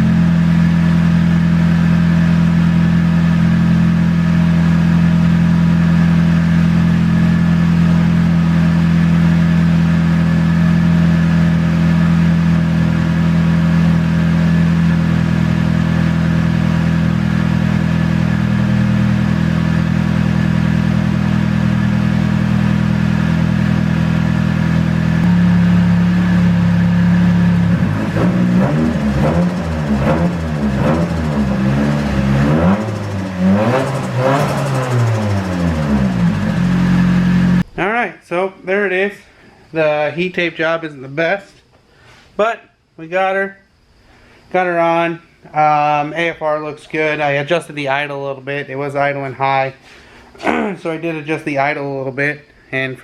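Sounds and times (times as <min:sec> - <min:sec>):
car engine idling: 0:00.0 - 0:37.8.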